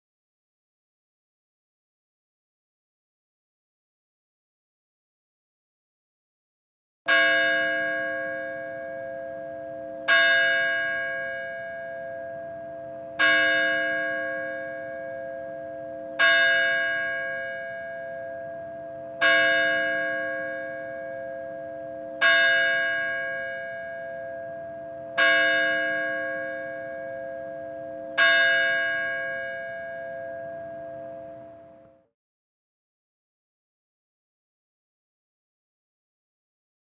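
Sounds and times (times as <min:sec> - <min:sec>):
church bell tolling: 0:07.1 - 0:32.0.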